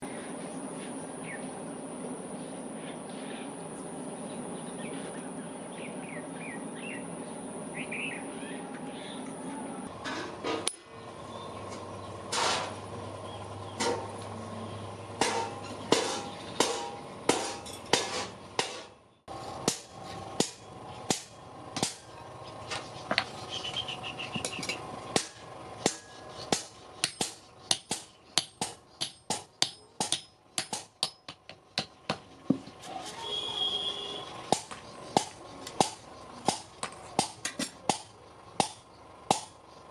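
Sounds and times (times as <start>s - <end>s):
birds chirping: 0.0s - 9.9s, 10.9s - 17.4s, 20.0s - 29.8s, 33.2s - 39.9s
steady background noise: 0.0s - 39.9s
hammer striking metal: 15.2s - 19.0s, 19.6s - 22.0s, 24.4s - 32.3s.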